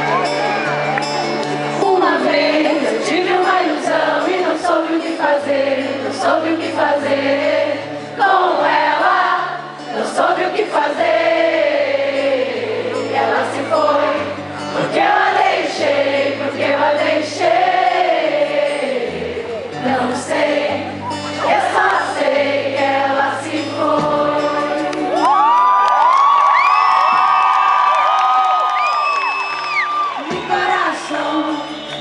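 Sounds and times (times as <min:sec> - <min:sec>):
voices singing a melody: 0:01.7 - 0:25.2.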